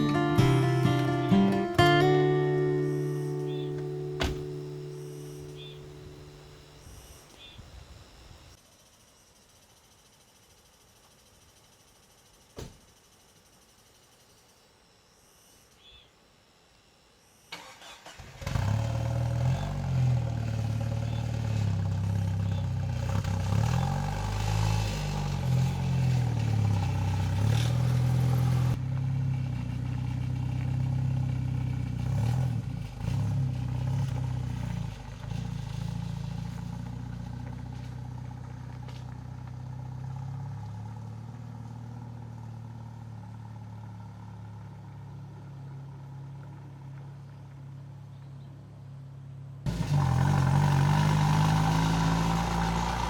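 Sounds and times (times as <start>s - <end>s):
car engine running: 0.0s - 6.9s, 18.5s - 53.0s.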